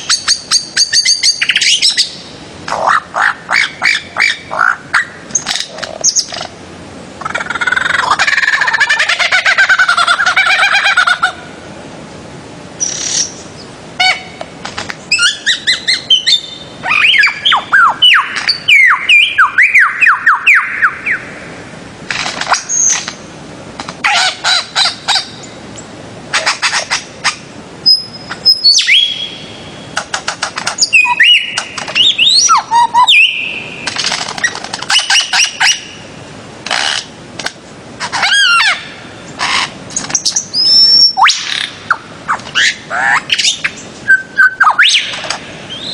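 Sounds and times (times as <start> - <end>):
bird calls and sliding whistles: 0.0 - 6.5, 12.8 - 14.2, 14.8 - 21.2, 22.4 - 23.2, 26.4 - 36.0, 39.4 - 45.9.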